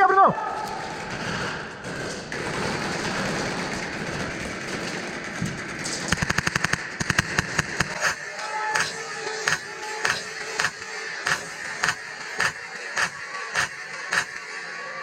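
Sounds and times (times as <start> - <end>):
airsoft guns firing: 0.6 - 14.6
steady noise: 5.3 - 14.5.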